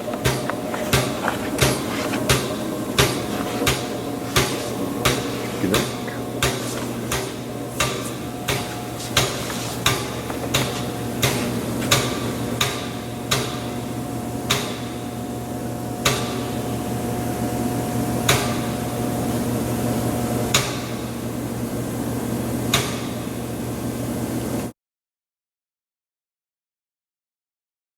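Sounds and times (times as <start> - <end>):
grinder humming: 0.0 - 12.6.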